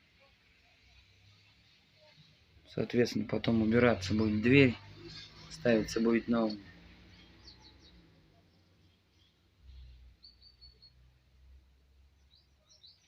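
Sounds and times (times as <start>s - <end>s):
faint bird chirps: 4.0s - 13.0s.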